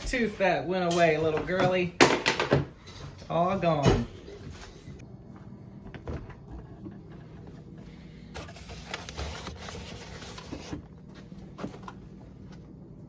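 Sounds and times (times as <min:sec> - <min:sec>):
utensils and dishes clattering: 0:00.8 - 0:03.2.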